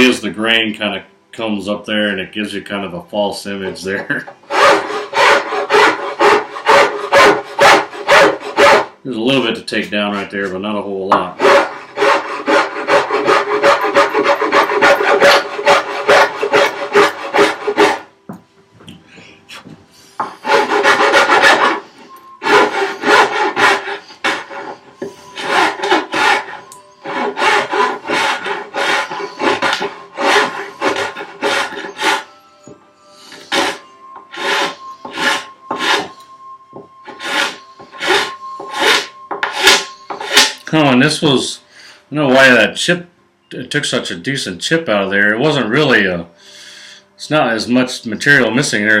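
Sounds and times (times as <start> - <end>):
file scraping across wood: 4.5 - 8.9, 11.1 - 18.1, 20.2 - 40.6.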